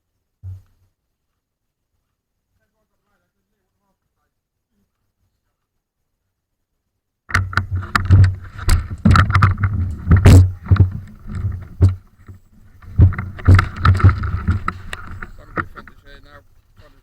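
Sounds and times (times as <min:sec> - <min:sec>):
microphone rumbling and crackling: 0:07.3 - 0:17.0.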